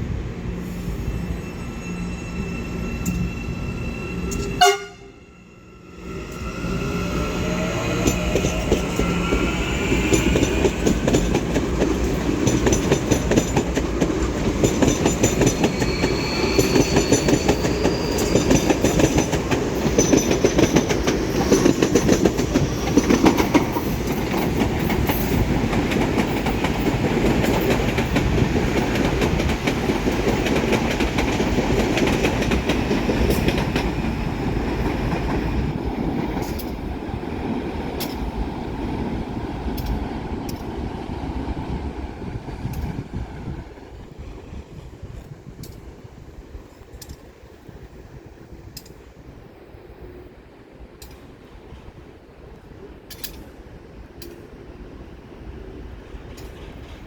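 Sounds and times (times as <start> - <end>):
train rumble: 0.0 - 57.0
thin wheel squeals: 15.5 - 18.7.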